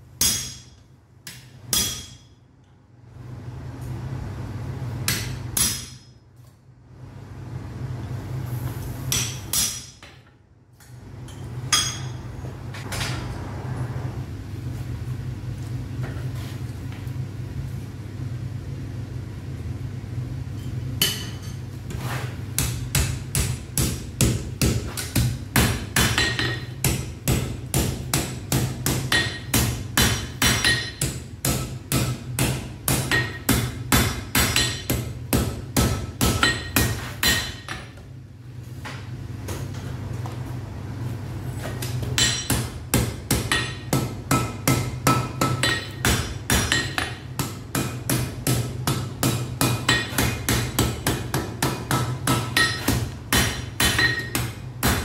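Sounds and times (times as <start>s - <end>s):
hammer striking iron on anvil: 0.2s - 2.4s, 5.0s - 6.2s, 9.1s - 10.3s, 11.3s - 12.2s, 21.0s - 21.5s, 22.6s - 38.0s, 42.1s - 55.0s.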